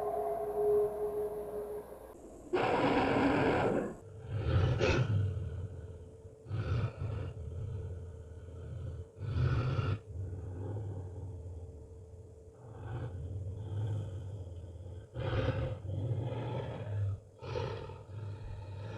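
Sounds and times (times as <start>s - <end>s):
werewolf howl: 0.0s - 3.8s
deep growls: 2.8s - 18.9s.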